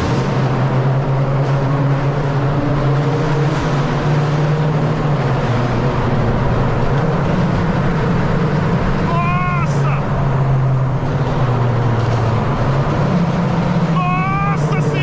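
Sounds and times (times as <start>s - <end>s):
car engine droning: 0.0s - 15.0s.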